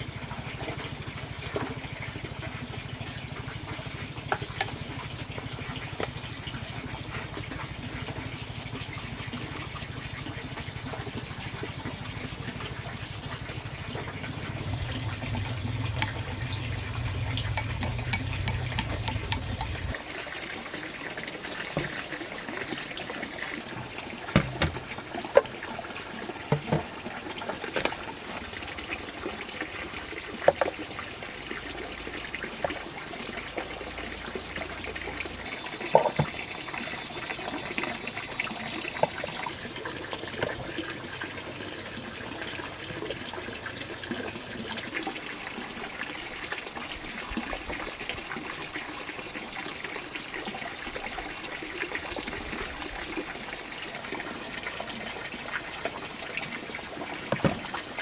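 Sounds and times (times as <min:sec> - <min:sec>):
low steady hum: 0:00.0 - 0:20.0
water running: 0:00.0 - 0:58.0.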